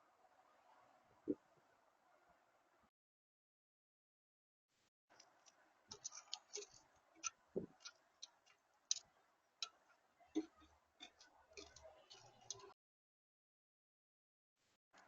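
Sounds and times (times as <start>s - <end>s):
birds clicking and tapping: 5.1s - 12.8s.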